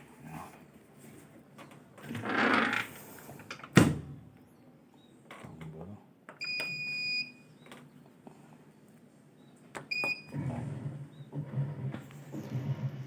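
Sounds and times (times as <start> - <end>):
washing machine control panel beeps: 6.4 - 7.4, 9.9 - 10.3.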